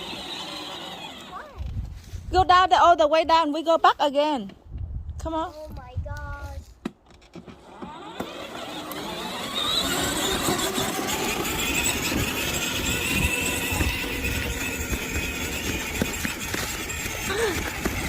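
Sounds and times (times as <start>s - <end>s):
electric motors whining: 0.0s - 1.7s, 7.4s - 18.0s
wheels rumbling on ground: 0.0s - 3.8s, 6.3s - 18.0s.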